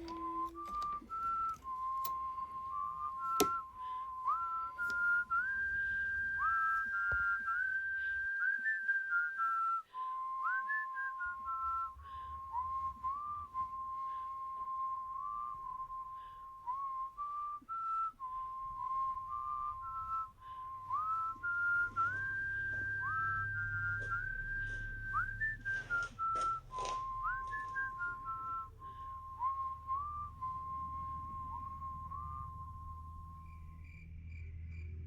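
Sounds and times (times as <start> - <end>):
person whistling a slow tune: 0.0 - 33.8
low hum: 17.7 - 35.0.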